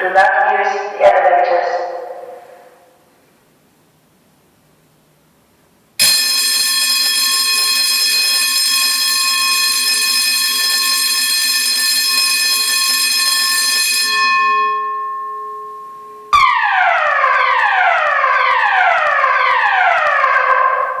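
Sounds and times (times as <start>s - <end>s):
steady alarm tone: 6.0s - 21.0s
falling evacuation tone: 15.0s - 20.2s.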